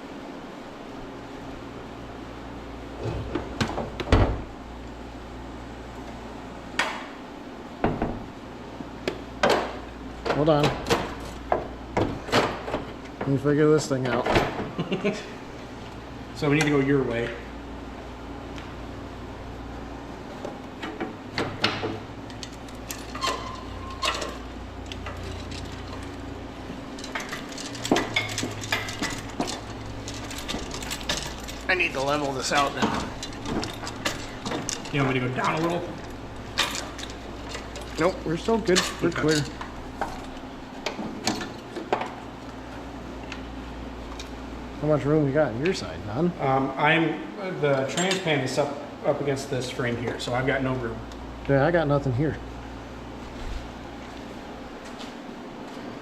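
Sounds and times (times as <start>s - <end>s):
steady low hum: 0.0s - 56.0s
metal clinks and knocks: 20.8s - 42.2s.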